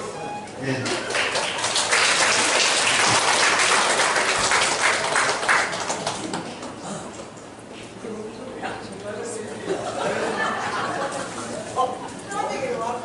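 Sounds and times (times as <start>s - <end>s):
audience applauding: 0.7s - 6.8s.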